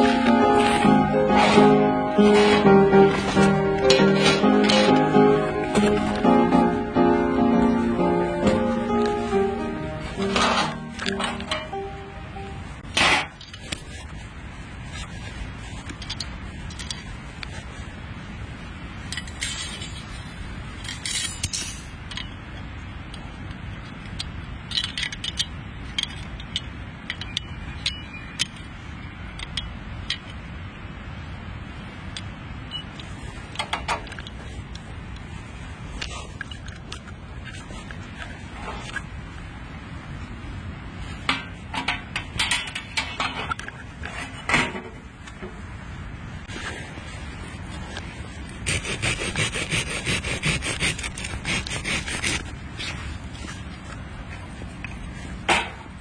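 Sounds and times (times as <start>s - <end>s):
hard objects clicking and rattling: 23.8s - 28.7s.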